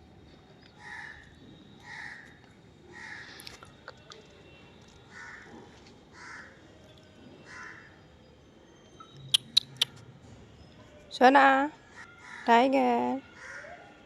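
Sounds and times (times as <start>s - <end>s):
crows cawing: 0.8s - 1.2s, 2.9s - 3.4s, 5.1s - 5.5s, 6.1s - 6.6s, 7.5s - 7.9s, 12.0s - 12.5s, 13.4s - 13.8s
sharp clicks: 9.4s - 9.9s.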